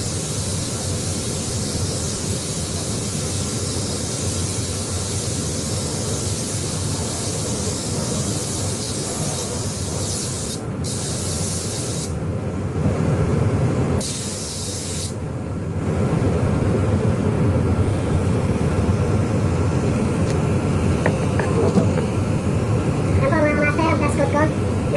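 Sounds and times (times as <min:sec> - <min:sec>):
spray gun hissing: 0:00.0 - 0:12.2, 0:14.0 - 0:15.2.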